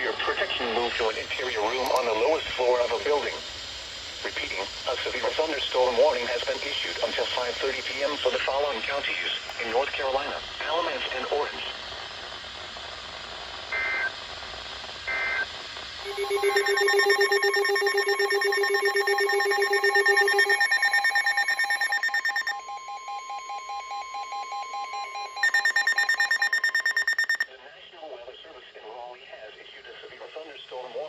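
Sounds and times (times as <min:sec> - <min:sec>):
data bursts: 0:04.2 - 0:11.6, 0:15.0 - 0:27.5
electronic alert tone pulsing: 0:16.0 - 0:27.4.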